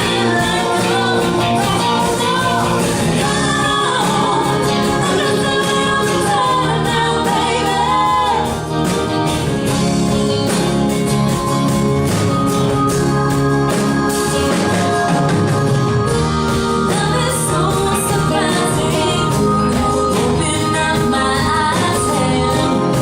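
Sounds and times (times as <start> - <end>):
person singing: 0.0 - 8.9, 14.3 - 23.0
drums keeping a steady beat: 0.0 - 23.0
live rock band playing: 0.0 - 23.0.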